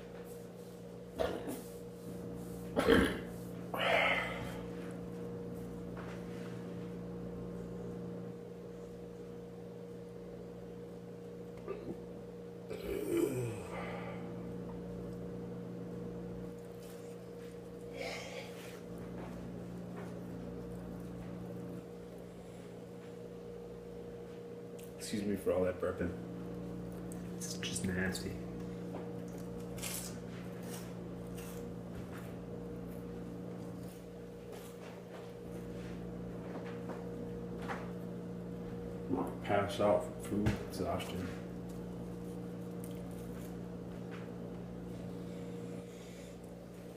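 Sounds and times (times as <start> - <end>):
steady electrical hum: 0.0 - 46.9
man burping: 2.8 - 4.4, 11.6 - 12.0, 12.7 - 13.8
breathy noise: 12.7 - 14.4
chewing toast: 29.1 - 31.7.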